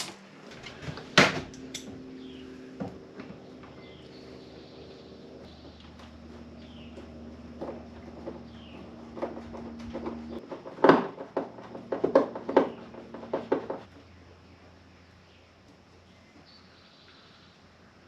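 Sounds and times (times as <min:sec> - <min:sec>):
steady low hum: 0:00.0 - 0:18.0
wooden cabinet parts knocking: 0:09.2 - 0:13.8.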